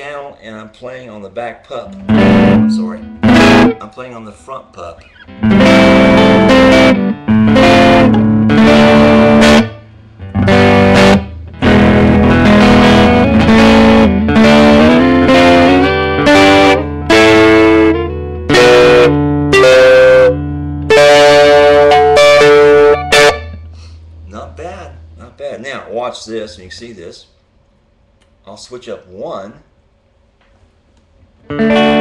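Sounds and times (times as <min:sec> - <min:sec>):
clean electric guitar chords: 0:01.9 - 0:03.9, 0:05.2 - 0:25.2, 0:31.4 - 0:32.0.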